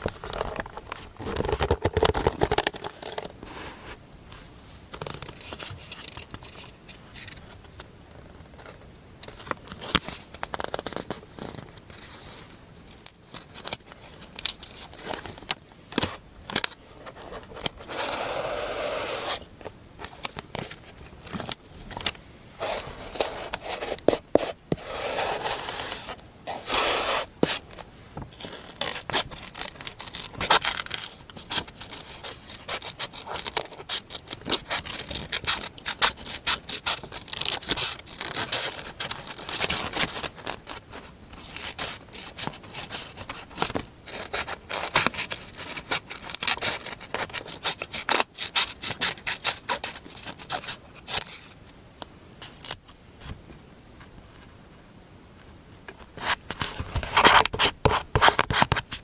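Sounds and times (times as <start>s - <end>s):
scratching and rubbing on paper: 17.1s - 19.4s, 22.6s - 27.7s, 28.4s - 51.2s, 56.2s - 59.0s.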